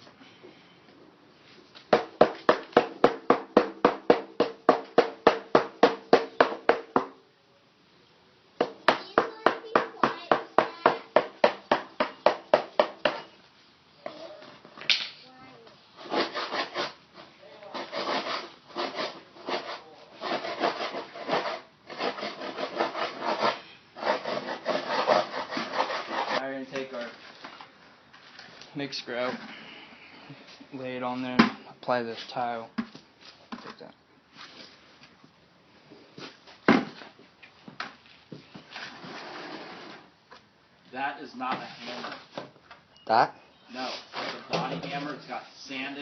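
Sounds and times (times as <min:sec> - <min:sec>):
blade scraping tile bed: 0:16.0 - 0:26.4, 0:38.7 - 0:40.1.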